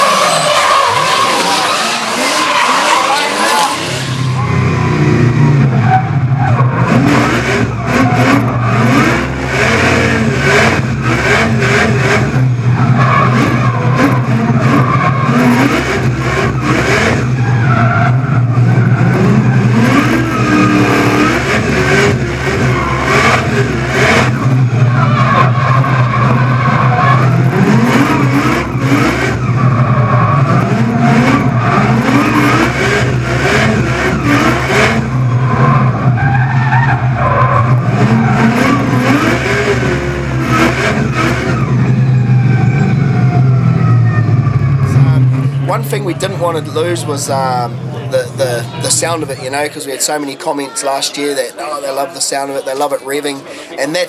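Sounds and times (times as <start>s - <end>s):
tyres squealing: 0.0s - 5.0s
car engine revving hard: 0.0s - 49.8s.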